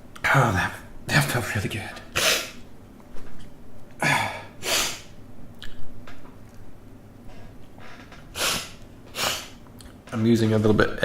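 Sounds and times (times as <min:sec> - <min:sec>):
man sniffing and snorting: 0:02.2 - 0:02.6, 0:04.6 - 0:05.1, 0:08.3 - 0:09.6.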